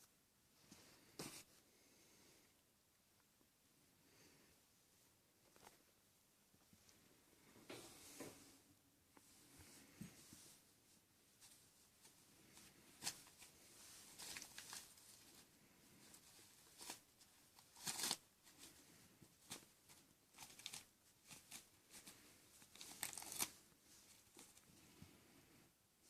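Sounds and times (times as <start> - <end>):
kittens scratching and rustling: 9.4 - 25.4.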